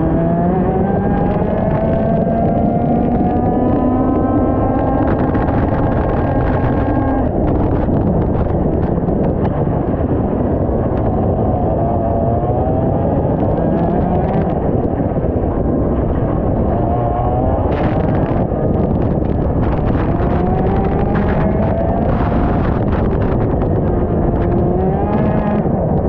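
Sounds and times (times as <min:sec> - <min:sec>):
kart engine accelerating: 0:00.0 - 0:26.0
wind rumble on microphone: 0:00.0 - 0:26.0.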